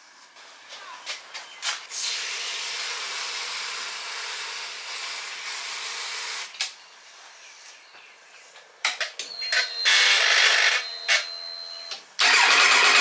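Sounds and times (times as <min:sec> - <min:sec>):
pressurised spray hissing: 0:02.0 - 0:06.5.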